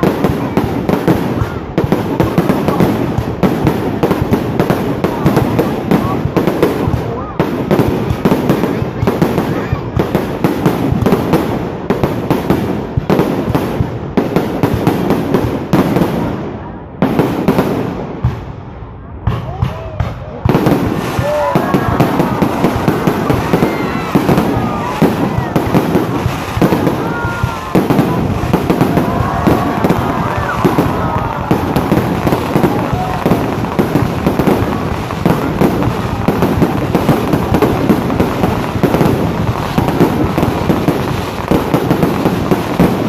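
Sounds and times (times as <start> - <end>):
fireworks cracking and popping: 0.0 - 43.0.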